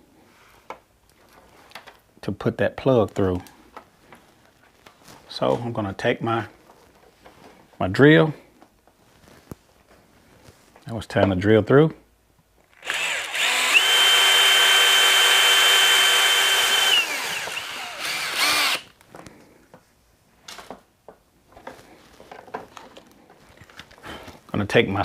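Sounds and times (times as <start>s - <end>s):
power drill whining: 12.7s - 19.0s.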